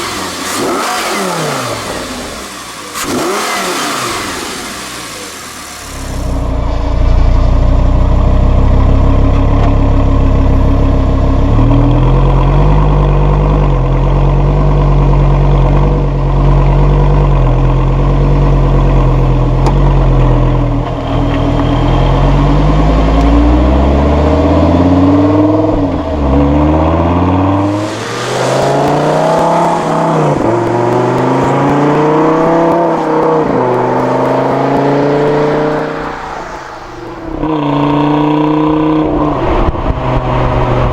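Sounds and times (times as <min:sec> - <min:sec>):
sports car engine accelerating: 0:00.0 - 0:40.9.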